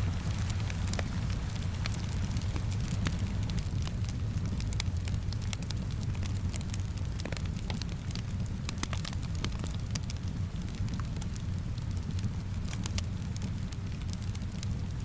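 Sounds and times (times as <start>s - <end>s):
rain hissing: 0.0s - 4.4s
fire rumbling: 0.0s - 15.0s
fire ticks and crackles: 0.0s - 15.0s.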